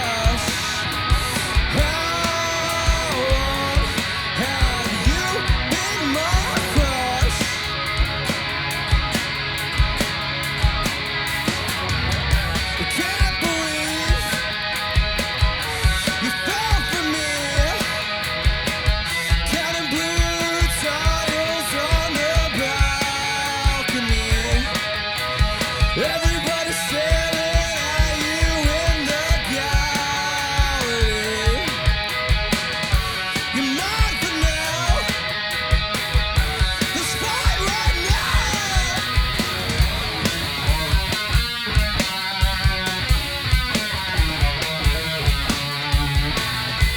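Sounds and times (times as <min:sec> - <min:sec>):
electric guitar melody: 0:00.0 - 0:46.9
drum kit hits: 0:30.6 - 0:46.9.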